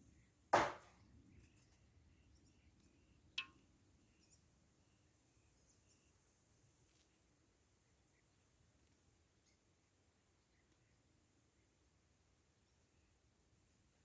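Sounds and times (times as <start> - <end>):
loud sudden knock: 0.6 - 0.9.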